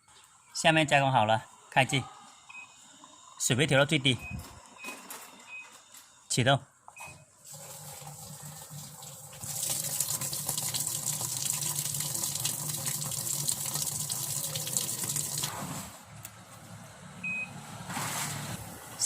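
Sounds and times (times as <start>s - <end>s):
washing machine hum: 7.4s - 16.1s.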